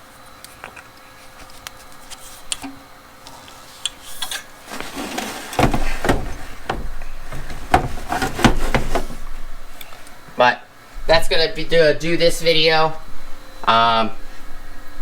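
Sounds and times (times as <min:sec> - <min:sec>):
rubbing and knocking on trimmer: 0:04.7 - 0:09.3.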